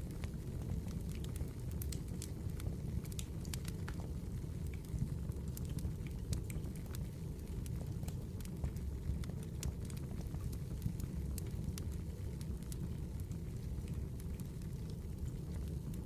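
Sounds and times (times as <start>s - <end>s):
fire low rumble: 0.0s - 16.0s
wood fire crackling: 0.0s - 16.0s.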